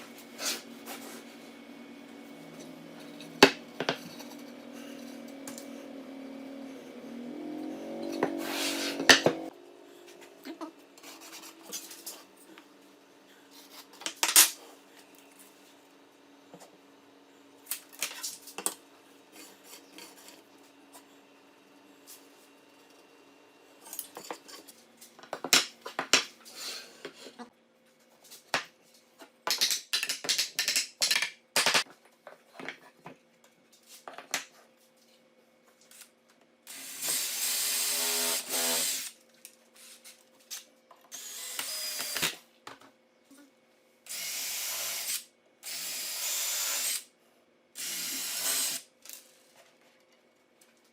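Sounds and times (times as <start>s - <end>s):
electric drill running: 36.7s - 39.2s, 41.1s - 42.4s, 44.1s - 47.1s, 47.8s - 48.9s.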